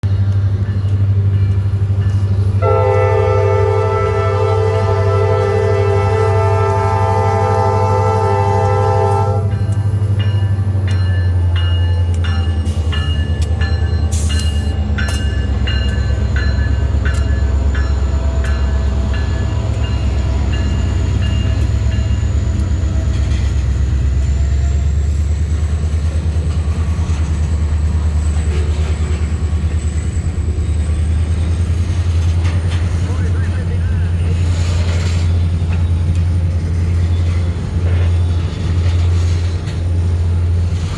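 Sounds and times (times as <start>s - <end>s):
diesel locomotive engine rumbling: 0.0s - 40.9s
locomotive bell ringing: 0.1s - 3.3s, 6.9s - 40.9s
train air horn: 2.6s - 9.5s.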